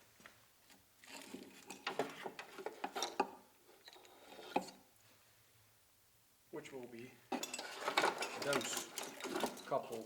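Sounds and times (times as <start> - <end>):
hard objects clicking and knocking: 1.0 - 4.8, 7.3 - 10.0.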